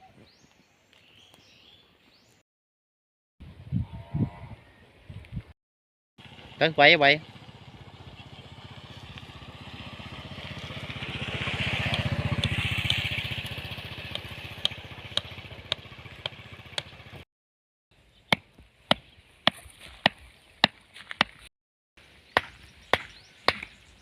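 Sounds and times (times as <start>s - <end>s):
vehicle engine passing: 6.2s - 17.2s.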